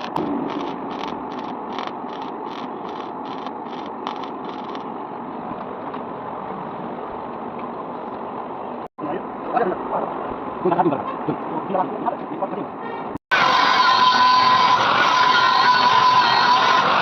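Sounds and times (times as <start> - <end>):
rhythmic clatter: 0.0 - 4.8
steady mechanical noise: 0.0 - 8.8.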